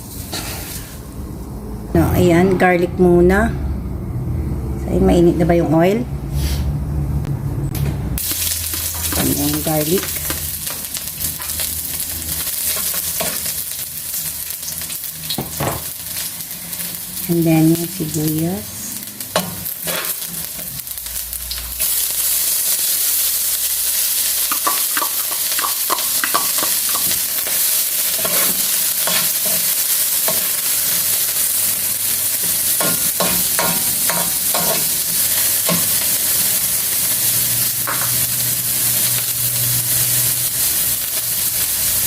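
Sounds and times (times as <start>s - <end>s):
onions sizzling in hot oil: 0.0s - 1.2s, 8.2s - 42.0s
spatula scraping a pan: 25.9s - 30.6s.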